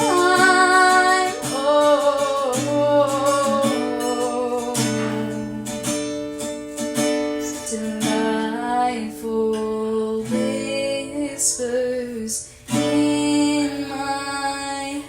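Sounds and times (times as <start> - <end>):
acoustic guitar strumming chords: 0.0 - 15.0
person singing held note: 4.8 - 5.5.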